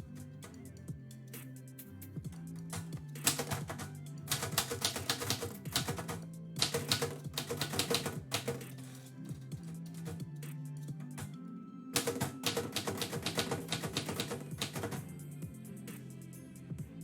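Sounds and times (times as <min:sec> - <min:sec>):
background music: 0:00.0 - 0:17.0
typewriter keys striking: 0:02.7 - 0:10.2, 0:12.0 - 0:15.0.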